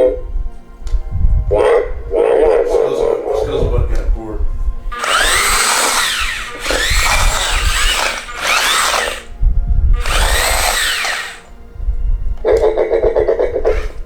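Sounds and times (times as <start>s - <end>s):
electric motors whirring: 4.9s - 9.3s, 10.0s - 11.6s
low buzzing tone: 5.0s - 12.2s.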